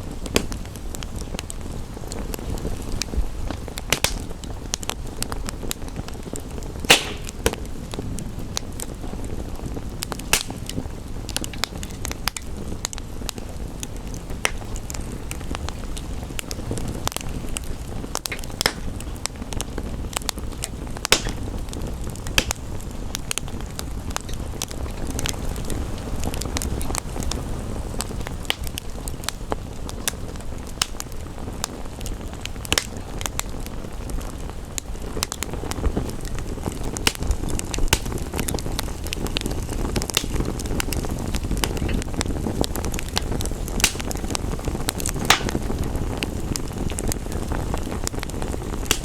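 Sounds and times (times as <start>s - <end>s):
soft hiss: 0.0s - 31.3s
low rumble of flames: 0.0s - 49.0s
wood fire crackling: 0.0s - 49.0s.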